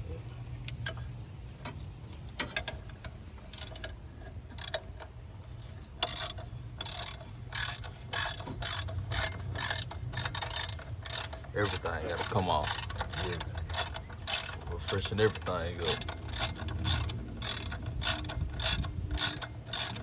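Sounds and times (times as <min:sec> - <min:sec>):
socket ratchet clicking: 0:06.0 - 0:20.0.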